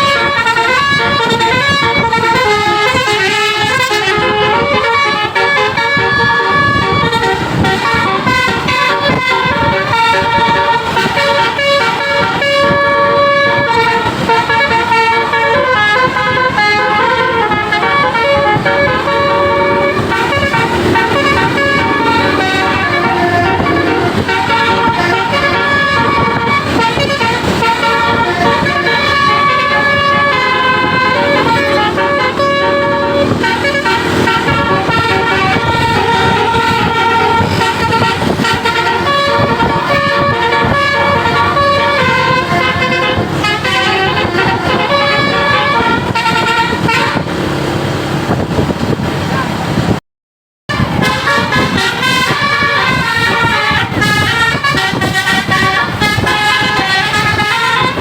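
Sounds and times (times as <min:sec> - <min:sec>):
bus engine rumble: 0:00.0 - 0:50.0, 0:50.7 - 0:58.0
bus horn playing a tune: 0:00.0 - 0:50.0, 0:50.7 - 0:58.0.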